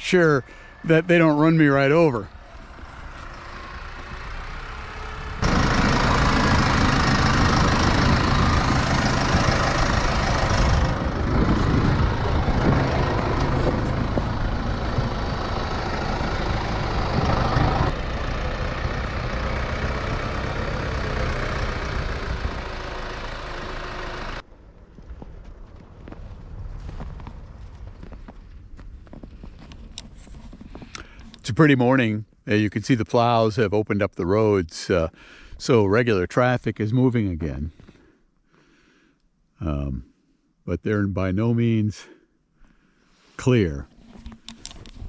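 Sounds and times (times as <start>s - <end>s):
heavy engine running: 0.0s - 26.5s.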